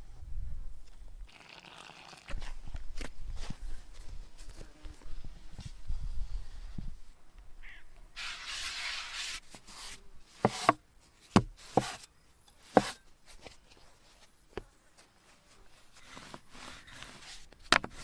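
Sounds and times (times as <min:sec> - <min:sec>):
knife chopping on cutting board: 0:10.4 - 0:10.8, 0:11.4 - 0:12.0, 0:12.8 - 0:13.0.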